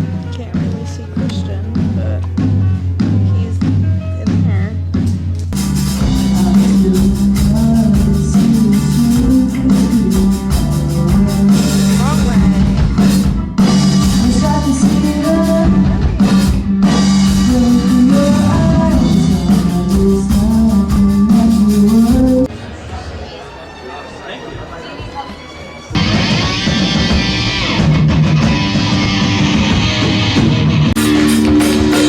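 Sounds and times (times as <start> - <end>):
drums: 0.0 - 22.5, 25.9 - 32.0
guitar: 0.0 - 22.5, 25.9 - 32.0
person singing: 5.9 - 22.5.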